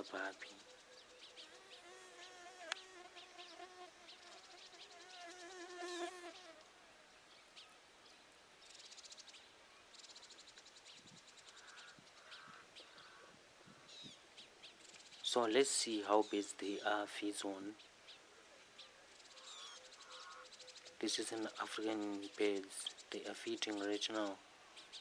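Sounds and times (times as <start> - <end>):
fly buzzing: 1.2 - 6.8.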